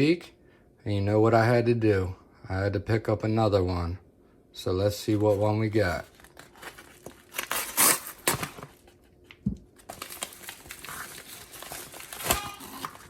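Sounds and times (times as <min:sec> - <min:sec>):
packaging crinkling: 0:05.1 - 0:13.0.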